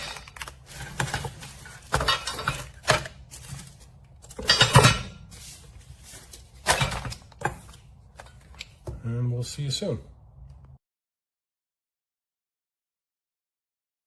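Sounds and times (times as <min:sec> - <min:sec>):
metal parts rattling clatter: 0:00.0 - 0:07.7
metal parts clanking: 0:00.0 - 0:08.4.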